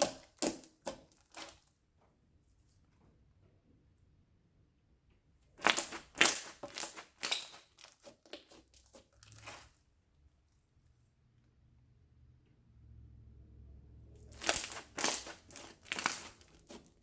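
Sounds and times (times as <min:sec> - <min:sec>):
slime squeezed by hand crackling: 0:05.6 - 0:09.8, 0:14.2 - 0:17.0.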